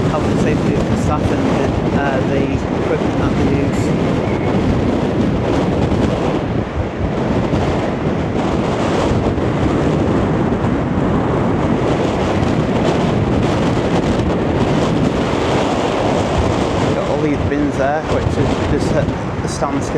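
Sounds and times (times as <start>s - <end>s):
strong wind buffeting microphone: 0.0s - 19.9s.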